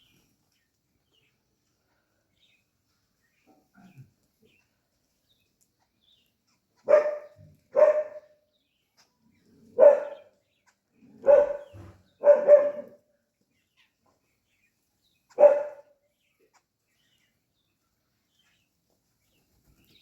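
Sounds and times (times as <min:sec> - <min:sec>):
dog barking: 0:06.8 - 0:08.4, 0:09.8 - 0:10.4, 0:11.2 - 0:13.0, 0:15.4 - 0:16.0.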